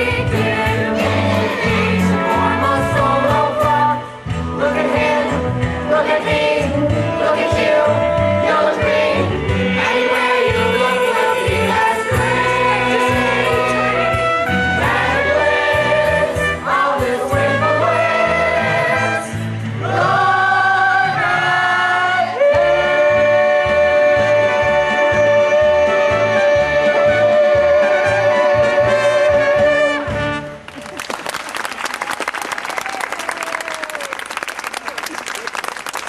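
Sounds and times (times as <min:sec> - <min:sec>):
instrumental accompaniment: 0:00.0 - 0:30.8
cast singing in chorus: 0:04.6 - 0:14.2.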